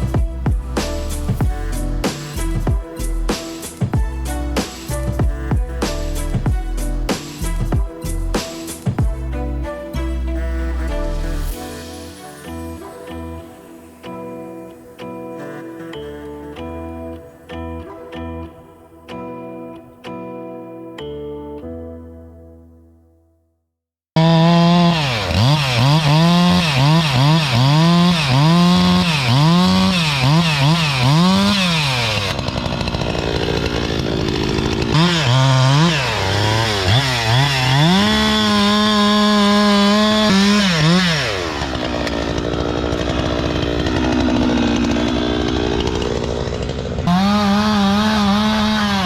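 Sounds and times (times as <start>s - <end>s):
chainsaw engine revving: 24.2s - 49.0s.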